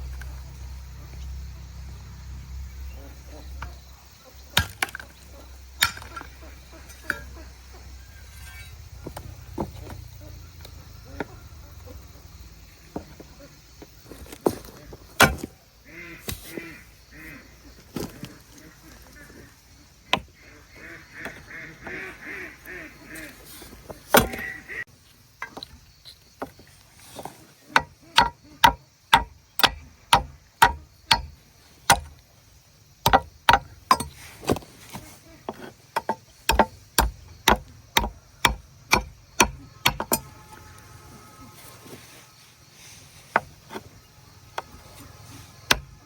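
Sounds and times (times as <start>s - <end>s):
blade chopping strikes: 27.8s - 31.3s, 33.1s - 34.1s.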